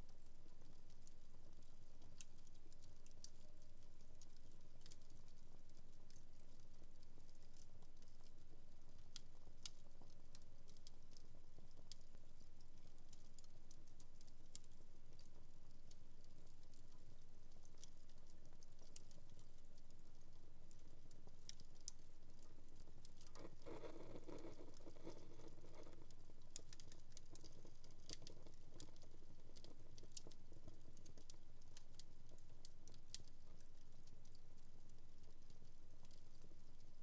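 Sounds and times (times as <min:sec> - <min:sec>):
fireplace fire crackling: 0:09.0 - 0:37.0.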